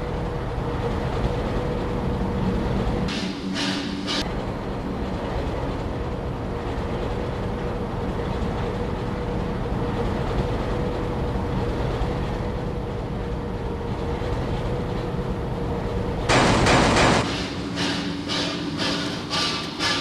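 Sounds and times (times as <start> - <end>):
railway engine rumbling: 0.0 - 20.0.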